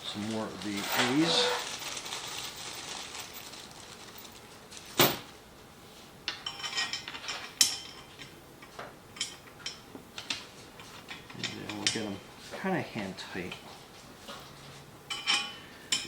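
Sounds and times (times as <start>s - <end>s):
metal bolts clicking and clinking: 11.2s - 12.2s.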